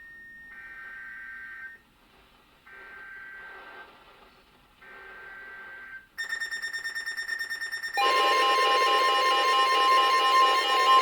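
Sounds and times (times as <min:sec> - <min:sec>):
pulsing electronic alarm tone: 0:06.2 - 0:11.0.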